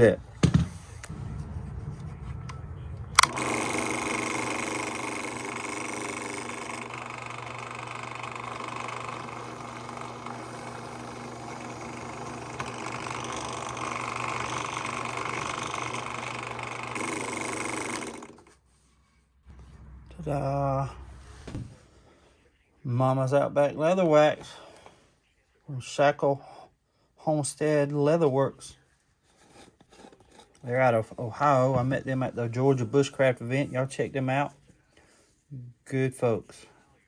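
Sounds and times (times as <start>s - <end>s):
drill press motor running: 2.4s - 18.6s.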